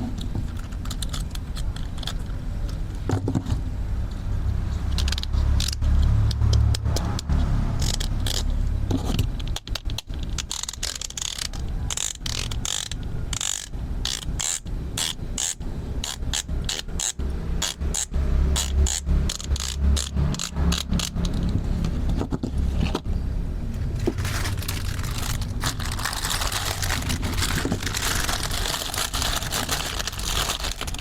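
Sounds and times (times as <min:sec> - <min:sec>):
quick ratcheting clicks: 0:09.4 - 0:22.1, 0:24.1 - 0:31.0
toy tool whirring: 0:09.6 - 0:21.6, 0:24.0 - 0:31.0.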